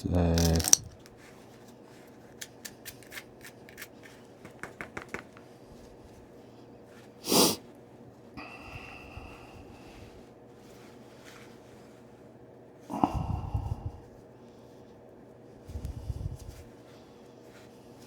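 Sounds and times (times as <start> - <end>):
stone flakes clicking: 0.0 - 1.1
breathy puff: 7.2 - 7.6.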